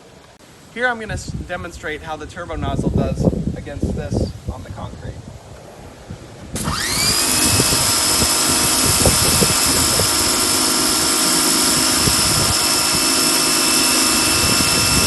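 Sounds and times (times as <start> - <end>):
pressure washer motor whine: 6.6 - 15.0.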